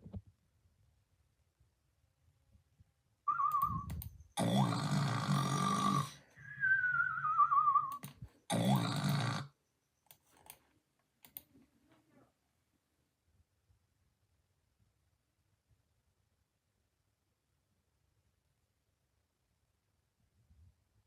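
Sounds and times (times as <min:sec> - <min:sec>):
loud whistling snoring: 0:04.4 - 0:09.6.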